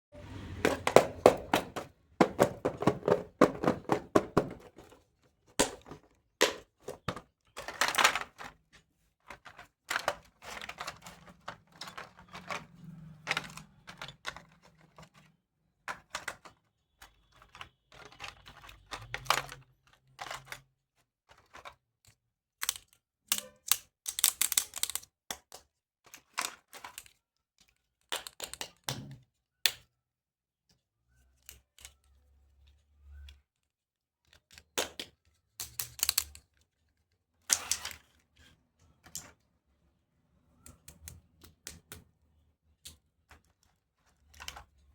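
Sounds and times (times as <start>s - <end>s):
packaging rustling: 0.6s - 5.0s.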